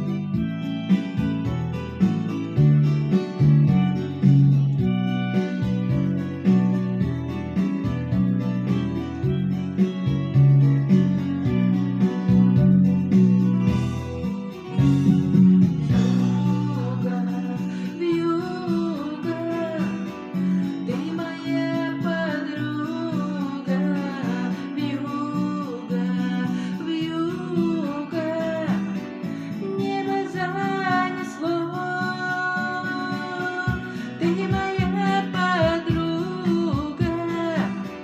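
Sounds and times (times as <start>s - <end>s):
guitar accompaniment: 0.0s - 38.0s
person singing: 13.7s - 38.0s.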